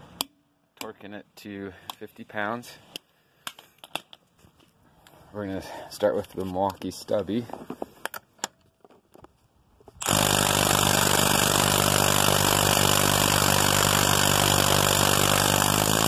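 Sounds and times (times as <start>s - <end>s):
impact wrench hammering: 10.0s - 16.0s.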